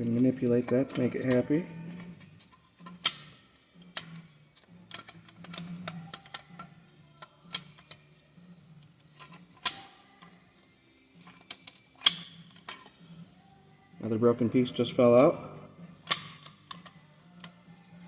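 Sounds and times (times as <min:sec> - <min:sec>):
plastic parts clicking and snapping: 0:02.2 - 0:08.1, 0:09.2 - 0:10.4, 0:11.2 - 0:13.0, 0:16.0 - 0:17.6.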